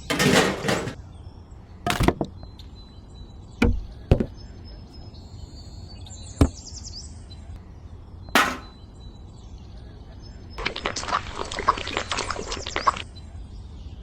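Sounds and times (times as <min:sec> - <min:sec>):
sharp knocks: 0:08.4 - 0:08.8.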